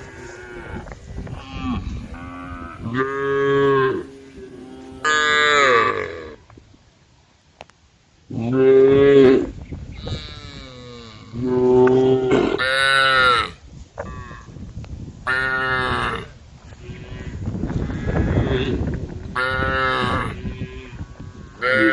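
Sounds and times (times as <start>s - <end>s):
cows mooing: 0.0s - 6.4s, 19.4s - 21.9s.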